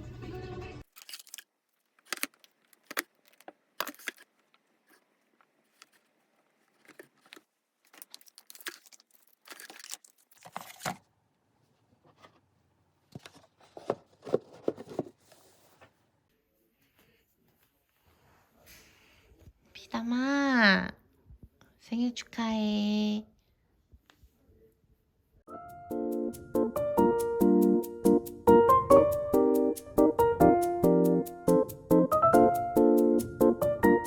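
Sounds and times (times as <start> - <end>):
packaging rustling and tearing: 0.8 - 11.0.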